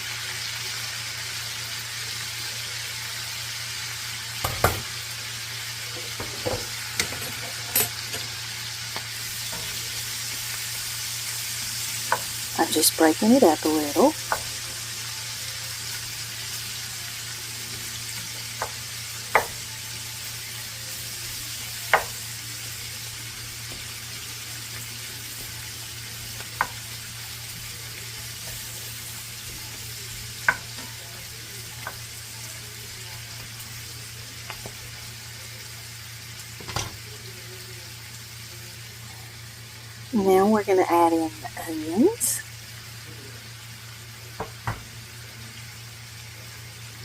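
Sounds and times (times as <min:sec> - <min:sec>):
cabbage sizzling in a skillet: 0:00.0 - 0:47.0
utensil knocking against pan: 0:18.6 - 0:19.6.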